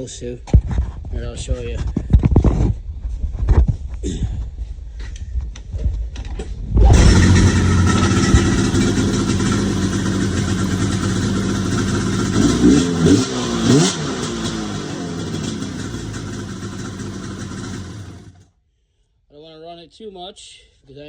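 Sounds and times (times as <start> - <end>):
engine throttle blips: 6.8 - 18.4
snowmobile engine idling: 6.9 - 18.4.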